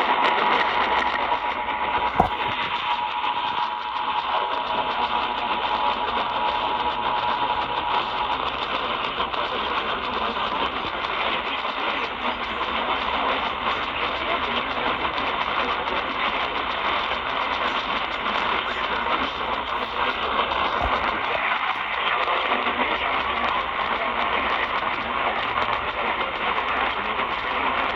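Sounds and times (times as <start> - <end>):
radio static hiss: 4.4 - 27.9.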